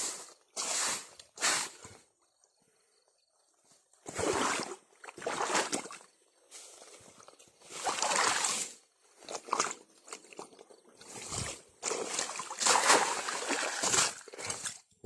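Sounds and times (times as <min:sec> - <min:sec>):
water sloshing and splashing: 0:04.0 - 0:06.3, 0:07.0 - 0:15.0.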